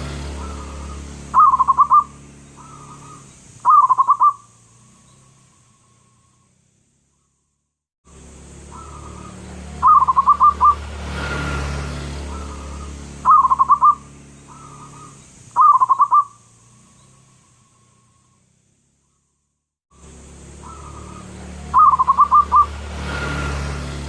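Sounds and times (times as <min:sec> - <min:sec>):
dove cooing: 0:00.0 - 0:04.5, 0:08.7 - 0:10.8, 0:12.2 - 0:16.4, 0:20.6 - 0:22.8.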